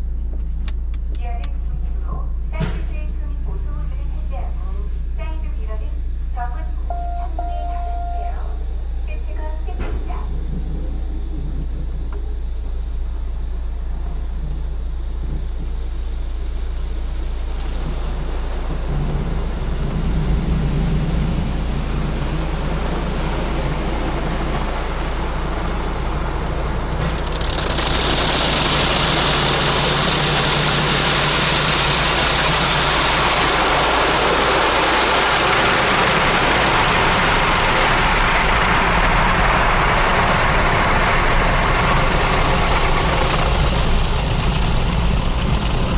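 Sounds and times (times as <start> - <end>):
car wash machine humming: 0.0 - 45.9
water jets rushing hiss: 15.9 - 45.9.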